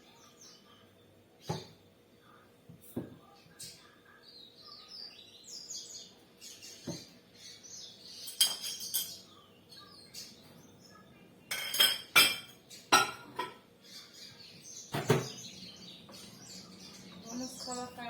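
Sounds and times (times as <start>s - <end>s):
birds chirping: 0.0s - 18.0s
mug and microwave clinking: 8.3s - 9.2s, 11.5s - 13.6s.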